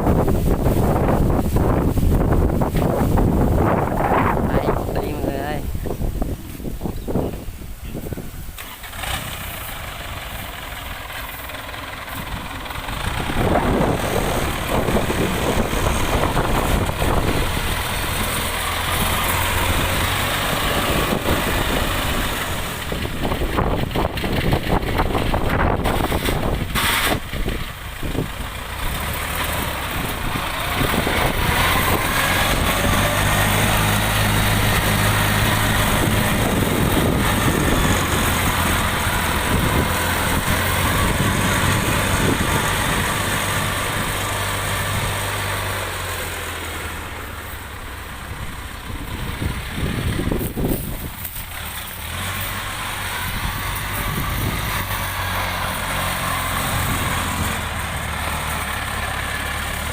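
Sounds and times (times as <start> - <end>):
diesel engine running: 0.0 - 59.9.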